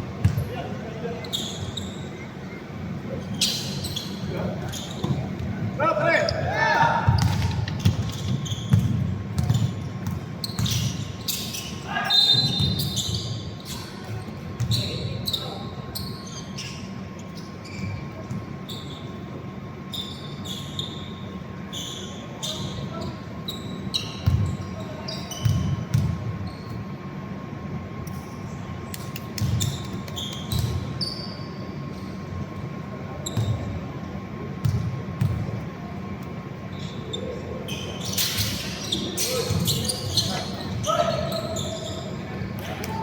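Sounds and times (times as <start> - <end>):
sneakers squeaking on floor: 0.1 - 26.9, 28.9 - 32.2, 33.1 - 34.0, 36.6 - 43.0
basketball bouncing on court: 0.2 - 0.5, 5.0 - 5.5, 7.0 - 11.0, 24.2 - 24.6, 25.3 - 26.4, 28.9 - 31.0, 34.6 - 35.6.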